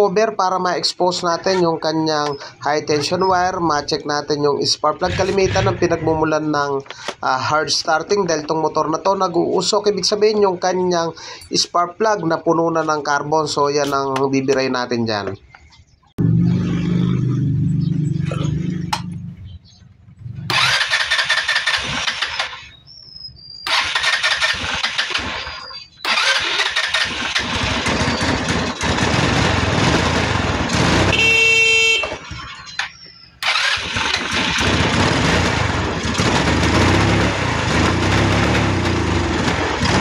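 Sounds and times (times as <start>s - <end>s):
motorcycle engine revving and misfiring: 5.0s - 6.0s, 16.2s - 19.6s, 20.2s - 22.7s, 23.7s - 32.5s, 33.4s - 40.0s.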